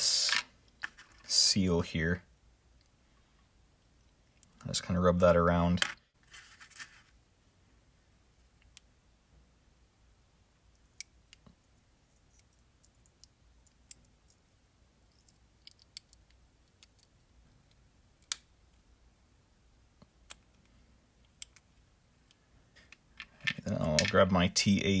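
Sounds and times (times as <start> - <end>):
metal parts clicking and tapping: 15.1 - 17.1.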